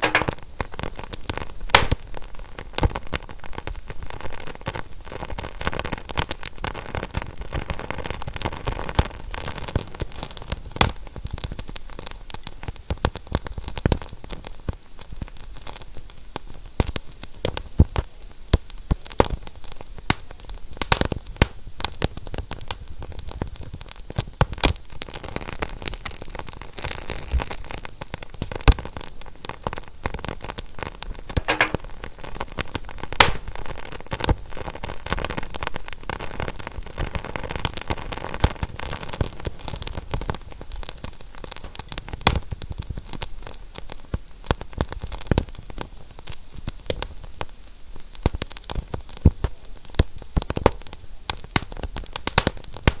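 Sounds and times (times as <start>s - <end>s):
sharp pops: 0.0s - 0.4s, 1.7s - 2.1s, 20.1s - 21.7s, 31.4s - 32.0s, 33.2s - 33.7s, 52.3s - 53.0s
fire crackling: 0.0s - 53.0s
steady hiss: 1.4s - 3.2s.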